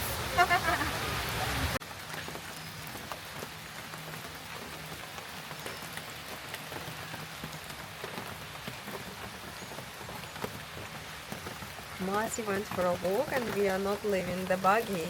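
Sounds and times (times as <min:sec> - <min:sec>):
heavy rain falling: 0:00.0 - 0:15.0
raindrops ticking: 0:00.3 - 0:15.0.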